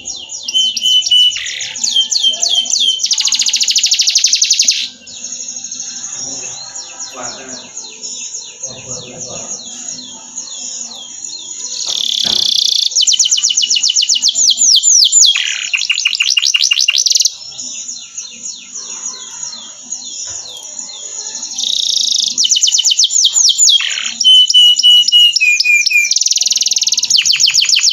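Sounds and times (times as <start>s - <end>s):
canary singing trills: 0.0s - 27.9s.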